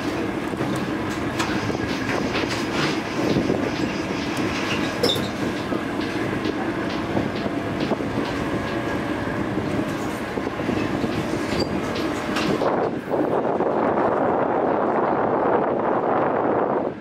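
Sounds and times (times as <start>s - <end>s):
ferry engines rumbling: 0.0s - 17.0s.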